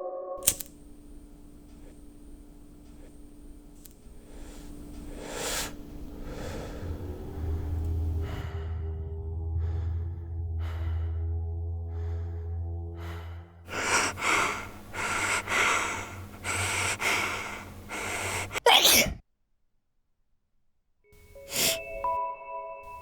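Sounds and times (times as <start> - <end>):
low drone: 0.0 - 18.6
faint sniffs: 0.4 - 8.3, 13.7 - 19.2, 21.3 - 22.1
person gasping breaths: 0.4 - 19.2, 21.4 - 22.0
person sneezing: 13.7 - 19.2, 21.5 - 21.9
bell-like music tones: 21.1 - 23.0.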